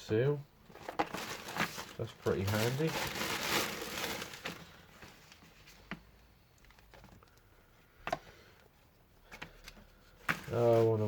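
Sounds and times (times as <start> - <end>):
plastic packaging crinkling: 0.7 - 5.4.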